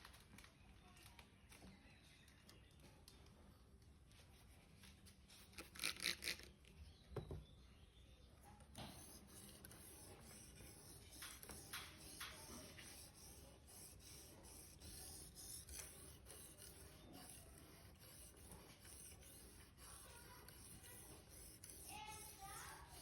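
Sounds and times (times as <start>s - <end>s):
knife scraping on sharpener: 8.8s - 23.0s.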